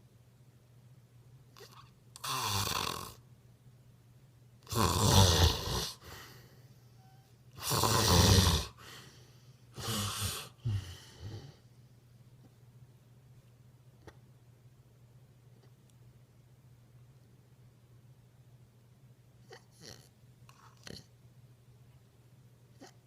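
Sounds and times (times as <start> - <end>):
person snoring: 1.6 - 3.2, 4.7 - 6.3, 7.6 - 9.2, 9.8 - 11.6.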